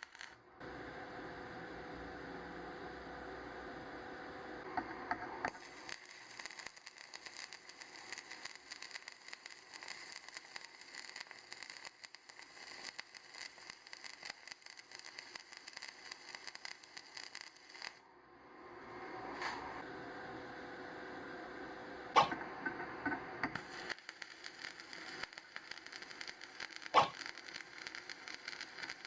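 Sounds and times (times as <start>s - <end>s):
welding arc crackling: 0.0s - 3.7s, 4.3s - 18.0s, 22.1s - 29.0s
sharp clicks of arc striking: 22.2s - 29.0s.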